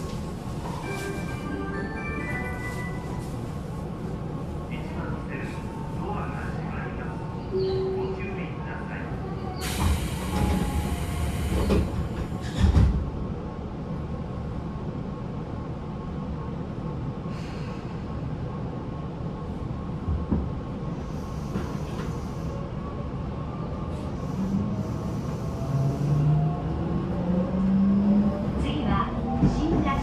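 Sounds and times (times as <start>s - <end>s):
train wheels rumbling on rail: 0.0s - 14.8s, 19.3s - 22.8s, 23.7s - 30.0s
train knocks: 9.6s - 13.1s, 28.8s - 30.0s.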